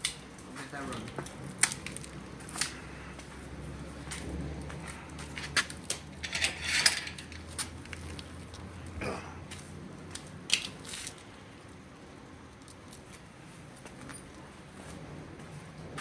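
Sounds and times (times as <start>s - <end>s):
hand tools clinking and clattering: 5.2s - 8.4s
scraping rattle: 5.4s - 8.3s.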